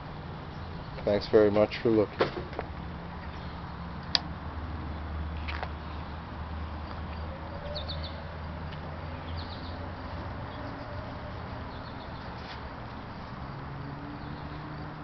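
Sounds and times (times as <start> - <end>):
high bird chirps: 7.2 - 12.4.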